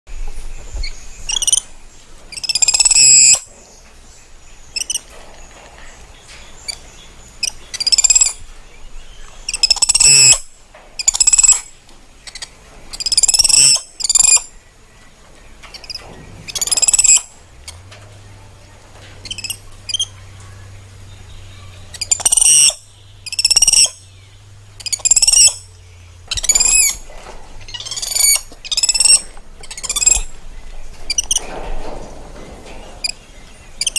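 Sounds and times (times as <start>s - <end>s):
monkey chirping calls: 1.3s - 1.6s, 2.3s - 3.5s, 4.8s - 5.0s, 7.4s - 8.4s, 9.5s - 10.4s, 11.0s - 14.5s, 19.2s - 20.1s, 21.7s - 24.0s, 24.8s - 25.6s, 27.7s - 30.3s.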